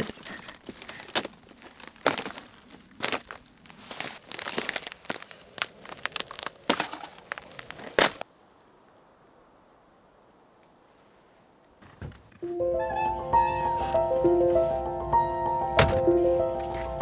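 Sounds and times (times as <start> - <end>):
ice cracking and crunching: 0.0 - 8.2
ice pieces crinkling: 0.0 - 8.2.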